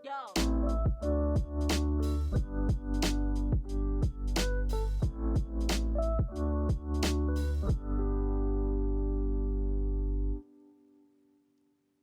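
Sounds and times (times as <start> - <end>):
electronic music with beat: 0.2 - 9.3.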